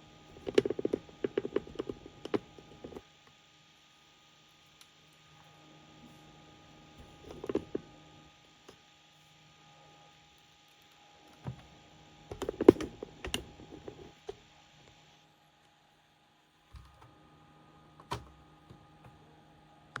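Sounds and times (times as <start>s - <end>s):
typing on laptop keyboard: 0.3s - 3.0s.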